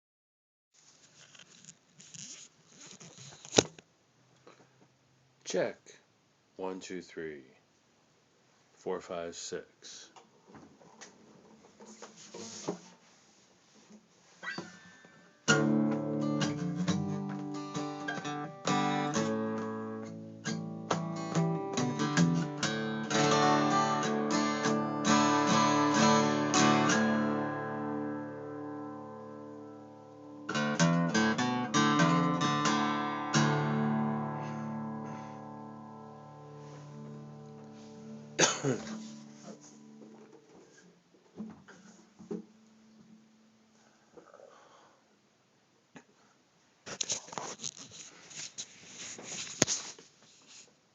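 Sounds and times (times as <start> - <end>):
faint handling noise: 0.8 - 5.0, 46.9 - 50.9
guitar playing chords: 15.5 - 40.2.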